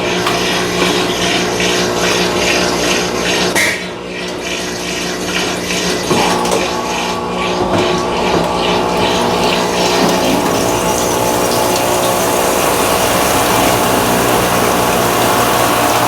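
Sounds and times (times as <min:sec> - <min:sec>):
washing machine motor hum: 0:00.0 - 0:16.0
water swishing: 0:00.2 - 0:16.0.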